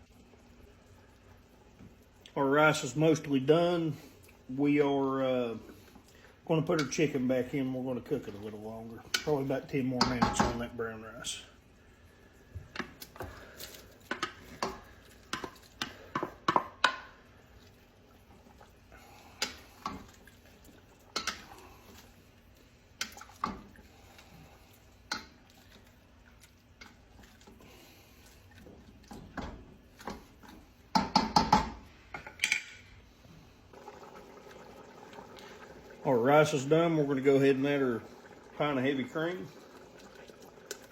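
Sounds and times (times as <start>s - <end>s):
utensils knocking against a pot: 10.0s - 10.6s, 30.9s - 32.8s.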